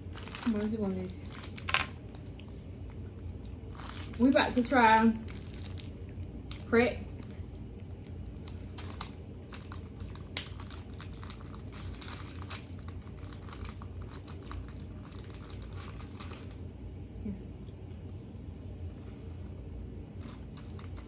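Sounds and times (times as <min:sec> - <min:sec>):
plastic packaging crinkling and tearing: 0:00.0 - 0:06.7, 0:07.9 - 0:16.6, 0:20.2 - 0:21.0.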